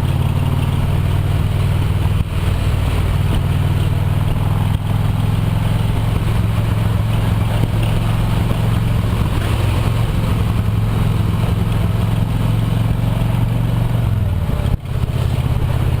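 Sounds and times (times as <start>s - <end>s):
engine humming: 0.0s - 16.0s
noisy rush: 0.0s - 16.0s.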